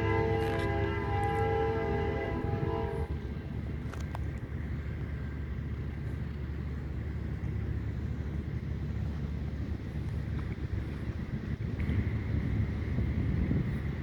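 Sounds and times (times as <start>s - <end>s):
locomotive air horn chord: 0.0s - 3.5s
low rumble of train: 0.0s - 14.0s.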